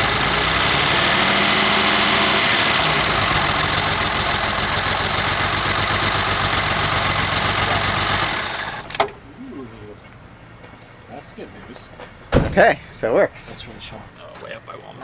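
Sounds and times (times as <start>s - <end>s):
car engine running rough: 0.0s - 9.5s.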